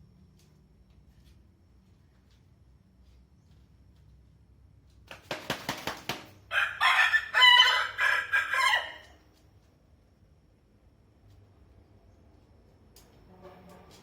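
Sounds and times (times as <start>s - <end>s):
rooster wings flapping: 5.0s - 6.4s
rooster crowing: 6.5s - 9.2s.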